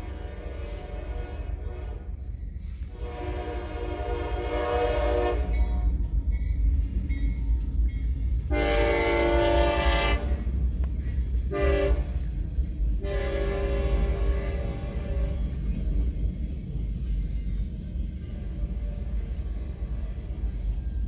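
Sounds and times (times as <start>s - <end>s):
locomotive air horn blasts: 0.0s - 5.8s, 8.5s - 10.6s, 11.4s - 12.4s, 13.0s - 15.6s
steady low rumble: 5.8s - 21.0s.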